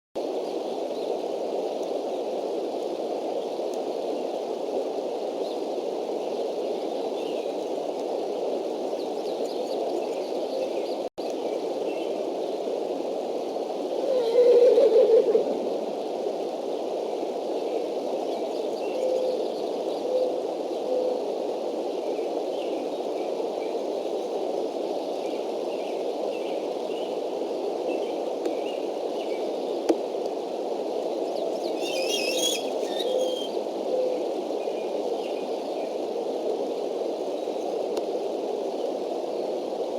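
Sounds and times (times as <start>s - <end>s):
faint distant bird chirps: 31.2s - 34.2s.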